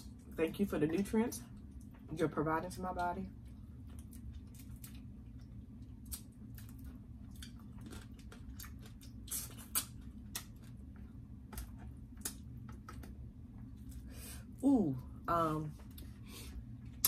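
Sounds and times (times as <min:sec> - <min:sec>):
low steady hum: 0:00.0 - 0:17.0
wet chewing: 0:03.3 - 0:14.0.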